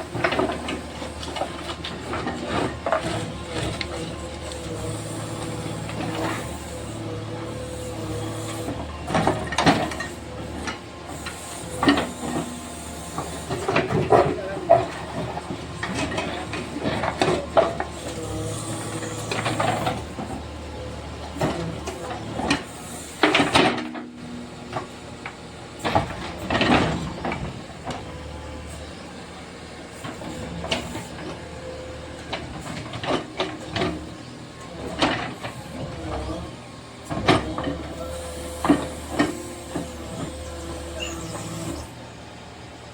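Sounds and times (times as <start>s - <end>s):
bucket scraping and clattering rubble: 0.0s - 24.0s
backhoe engine running: 0.0s - 42.9s.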